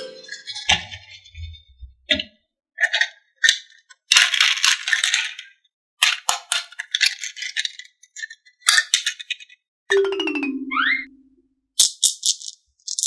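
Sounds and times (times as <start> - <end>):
marbles rattling down wooden run: 3.5 - 9.4, 11.8 - 13.0.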